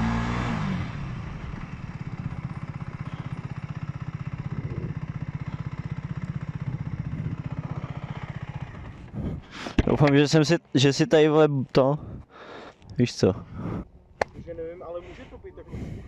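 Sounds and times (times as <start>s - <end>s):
motorcycle engine slowing and idling: 0.0s - 10.1s
wind noise: 7.0s - 7.6s, 13.4s - 14.7s, 15.6s - 16.0s.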